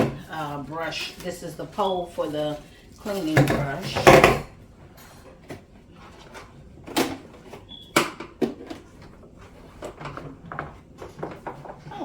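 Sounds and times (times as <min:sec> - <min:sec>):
plastic parts knocking: 0:03.2 - 0:04.5, 0:06.8 - 0:11.9.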